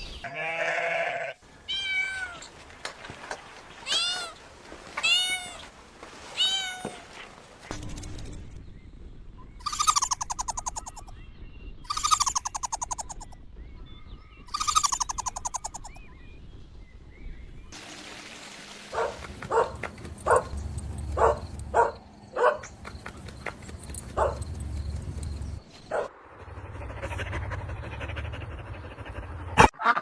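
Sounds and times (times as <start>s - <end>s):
faint bird chirps: 7.8s - 16.4s
bird pulsing trill: 9.6s - 11.1s, 11.9s - 13.4s, 14.5s - 16.1s
puppy yips: 9.6s - 11.1s, 11.9s - 13.4s, 14.5s - 16.0s.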